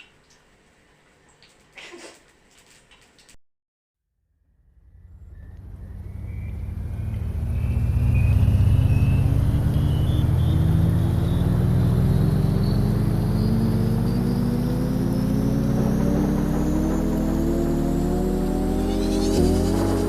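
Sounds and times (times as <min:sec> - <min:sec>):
motor running and speeding up: 0:04.6 - 0:20.0
thin high whine: 0:04.8 - 0:20.0.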